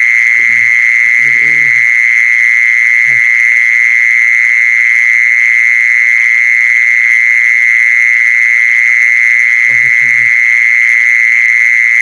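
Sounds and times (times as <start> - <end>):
low croak-like call: 0.0 - 7.3, 8.6 - 12.0
animal high-pitched trill: 0.4 - 1.9.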